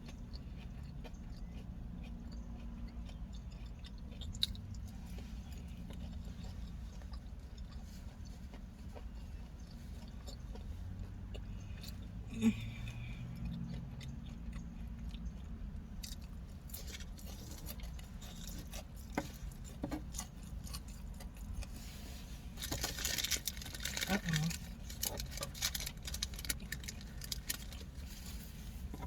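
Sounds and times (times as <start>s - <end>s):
chewing and mouth clicks: 0.0s - 29.0s
low hum in a car: 0.0s - 29.0s
rustling: 21.6s - 29.0s.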